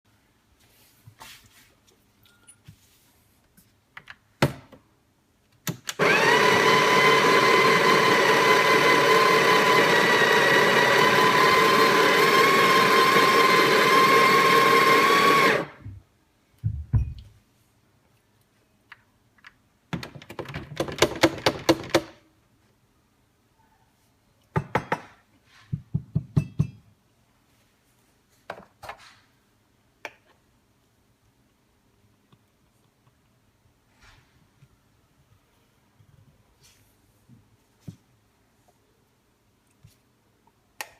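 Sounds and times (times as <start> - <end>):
coffee grinder motor whine: 6.0 - 15.8.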